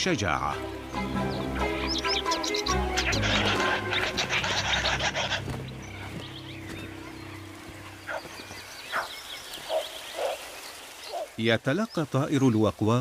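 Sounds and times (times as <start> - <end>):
background music: 0.0 - 9.0
bird calls: 0.0 - 13.0.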